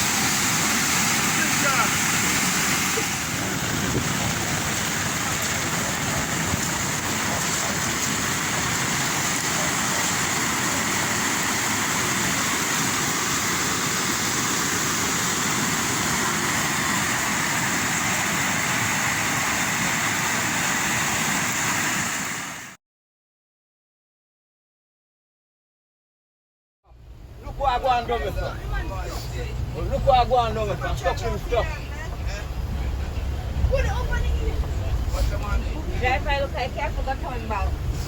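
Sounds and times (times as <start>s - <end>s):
strong wind: 0.0s - 22.7s
heavy rain: 0.0s - 22.8s, 30.8s - 38.0s.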